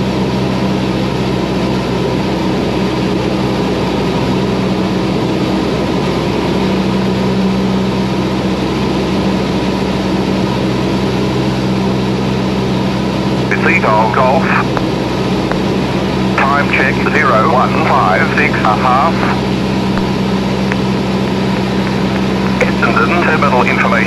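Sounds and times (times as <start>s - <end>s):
aircraft engine and propeller droning: 0.0s - 24.0s.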